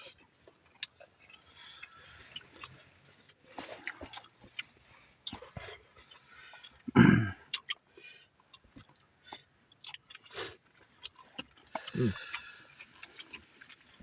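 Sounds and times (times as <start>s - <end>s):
chewing and lip smacks: 0.0s - 6.9s, 7.5s - 14.0s
short vocal sounds: 11.9s - 12.3s.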